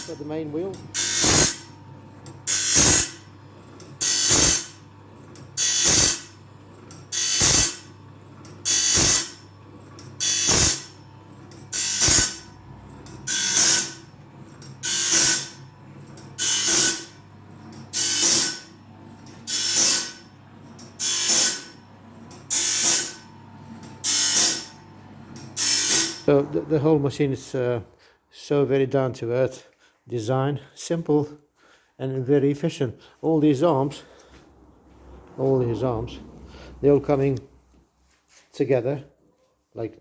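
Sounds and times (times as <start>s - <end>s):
grinding wheel grinding blade: 0.0s - 27.1s.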